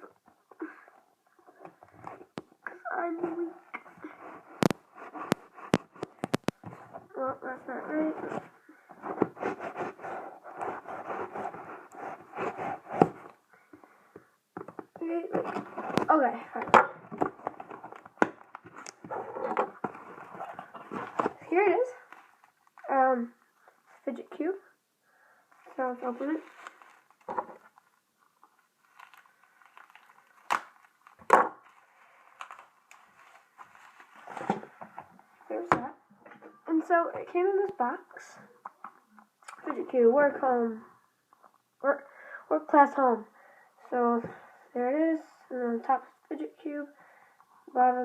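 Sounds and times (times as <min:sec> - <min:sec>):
scraping and rustling: 0:15.0 - 0:22.8, 0:25.6 - 0:35.7.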